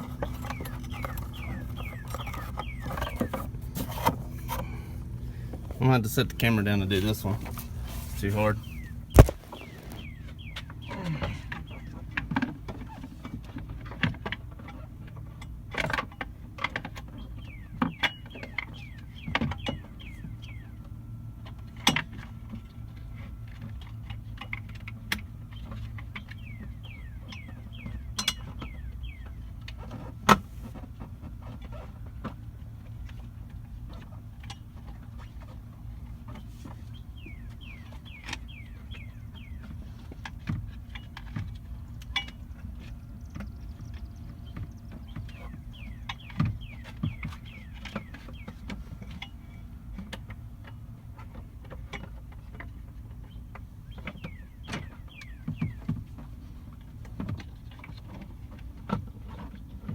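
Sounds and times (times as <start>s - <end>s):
steady low hum: 0.0s - 11.3s.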